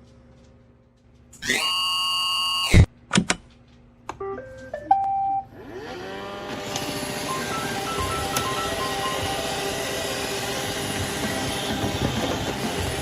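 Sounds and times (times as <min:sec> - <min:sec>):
buzzy tone: 0:01.4 - 0:02.9
vacuum motor whirring: 0:01.4 - 0:02.9, 0:05.5 - 0:13.0.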